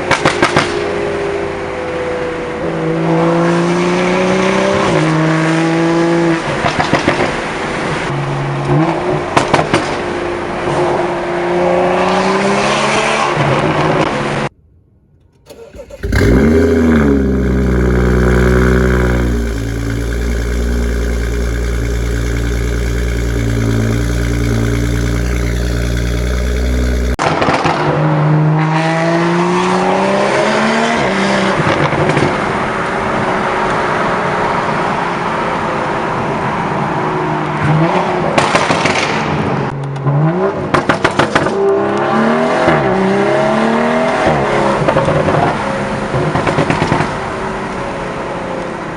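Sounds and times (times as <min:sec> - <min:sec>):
car engine revving: 0:15.4 - 0:27.2.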